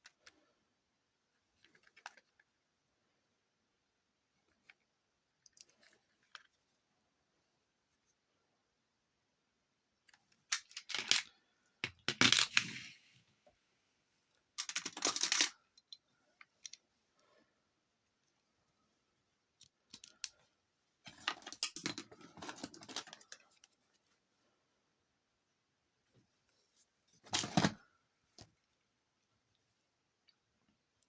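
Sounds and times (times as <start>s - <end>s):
small metal objects clinking: 14.6s - 16.0s.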